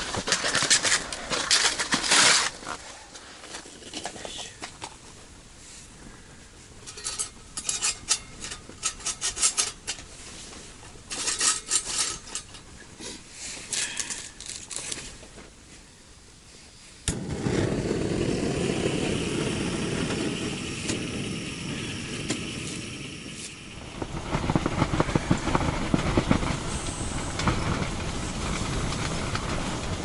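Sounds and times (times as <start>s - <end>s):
crackling and flapping: 0.0s - 5.4s, 17.1s - 30.0s
wind buffeting microphone: 17.1s - 30.0s.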